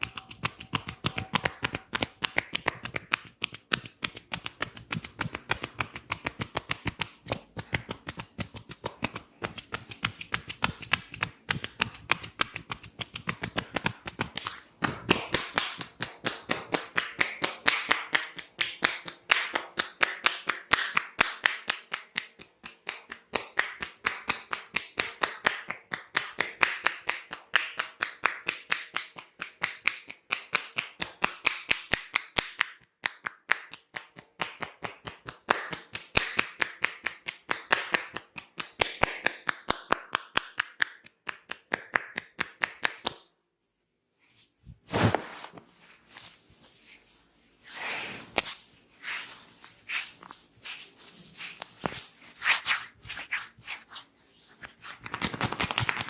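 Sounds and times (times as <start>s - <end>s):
rapid hand slaps and taps: 0.0s - 43.3s, 54.7s - 56.0s.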